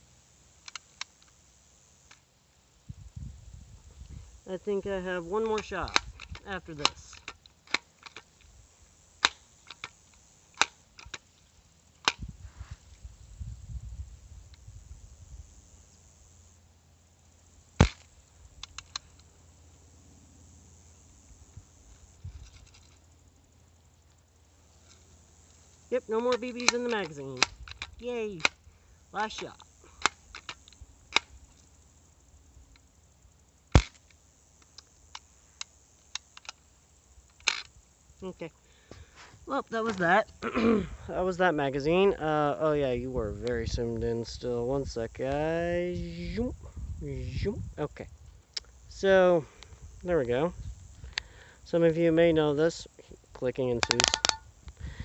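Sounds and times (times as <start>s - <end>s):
bb gun firing clicks: 33.7s - 34.1s, 53.8s - 54.4s.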